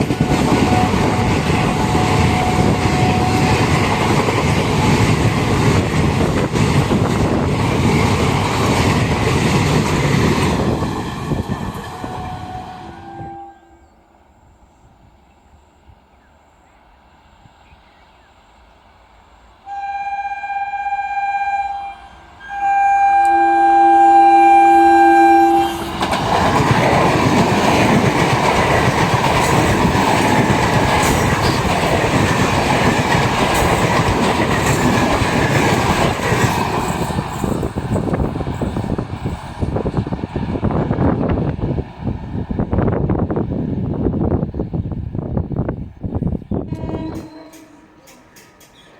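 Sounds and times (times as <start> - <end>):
train wheels clattering: 0.0 - 12.4, 25.8 - 40.2, 46.7 - 48.9
locomotive horn blasts: 0.2 - 3.7, 12.0 - 14.0, 19.6 - 26.0, 46.7 - 48.3.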